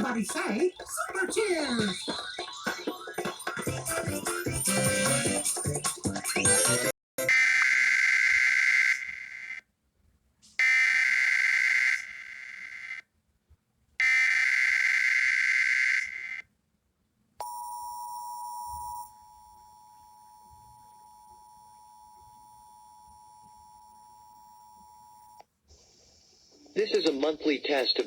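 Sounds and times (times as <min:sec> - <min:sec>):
steady attention tone: 0:17.4 - 0:25.4.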